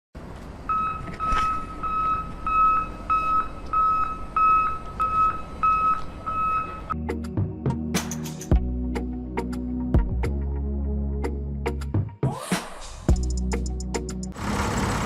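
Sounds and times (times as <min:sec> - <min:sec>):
music: 0:06.9 - 0:14.4.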